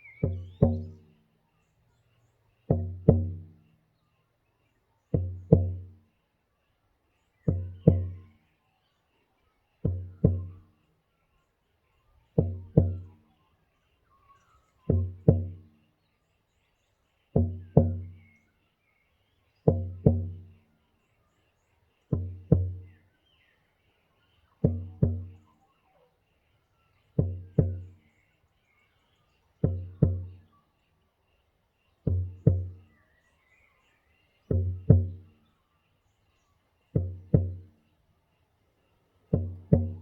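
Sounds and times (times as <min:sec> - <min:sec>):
frame drum beaten in heartbeat rhythm: 0:00.1 - 0:01.1, 0:02.7 - 0:03.6, 0:05.2 - 0:05.9, 0:07.5 - 0:08.2, 0:09.8 - 0:10.6, 0:12.4 - 0:13.1, 0:14.9 - 0:15.7, 0:17.4 - 0:18.2, 0:19.7 - 0:20.6, 0:22.1 - 0:22.9, 0:24.6 - 0:25.4, 0:27.2 - 0:28.0, 0:29.6 - 0:30.4, 0:32.0 - 0:32.9, 0:34.5 - 0:35.3, 0:36.9 - 0:37.7, 0:39.3 - 0:40.0.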